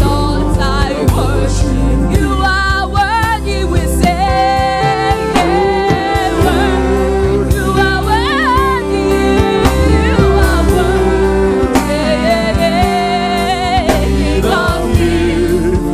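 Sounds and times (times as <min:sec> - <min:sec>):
bass line: 0:00.0 - 0:15.9
gospel choir singing: 0:00.0 - 0:15.9
drum beat: 0:09.6 - 0:11.0.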